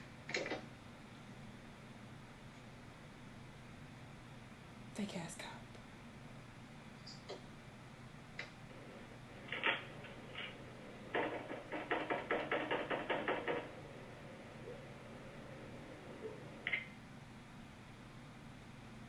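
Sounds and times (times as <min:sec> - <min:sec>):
knocking on a door: 0:11.2 - 0:13.8.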